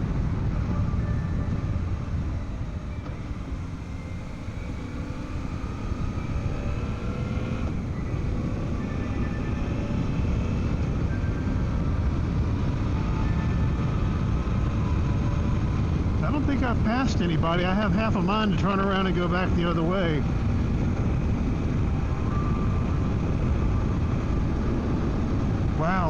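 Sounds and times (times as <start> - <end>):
motorcycle engine running: 0.0 - 16.4
wind and road noise: 0.0 - 26.0.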